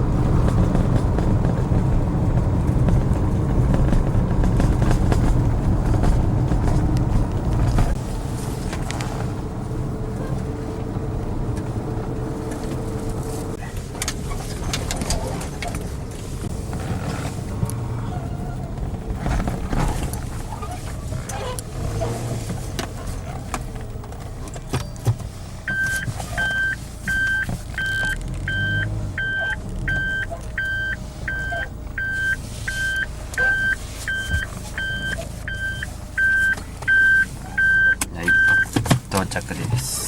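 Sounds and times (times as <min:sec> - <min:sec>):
low steady rumble: 0:00.0 - 0:40.0
electronic beeps: 0:25.7 - 0:38.7.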